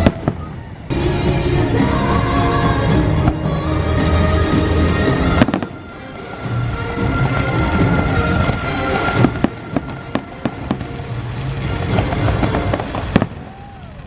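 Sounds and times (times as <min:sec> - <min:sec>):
fireworks bangs: 0:00.0 - 0:02.2, 0:05.1 - 0:14.0
loud show music: 0:00.0 - 0:13.3.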